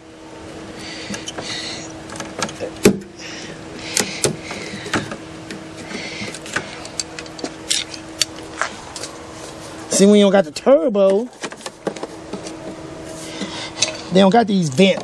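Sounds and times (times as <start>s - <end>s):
faint steady hum: 0.0s - 15.0s
heavy breathing: 0.7s - 2.0s, 3.1s - 5.2s, 5.8s - 7.0s, 13.0s - 14.2s.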